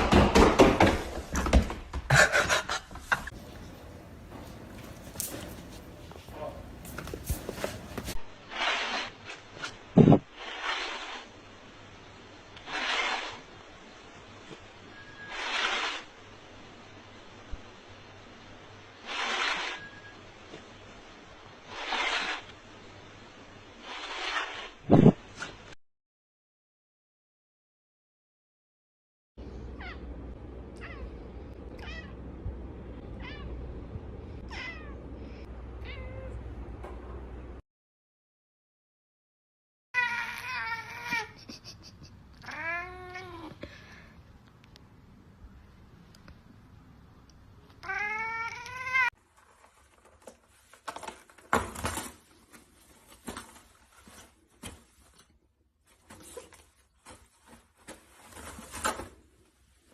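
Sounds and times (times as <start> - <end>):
knocks and rustles: 0.0 - 8.3, 49.2 - 59.5
low background hum: 2.1 - 8.2, 29.4 - 37.6
cat meowing: 31.8 - 32.2, 34.5 - 35.0, 35.8 - 36.4, 42.4 - 43.5, 47.8 - 49.1.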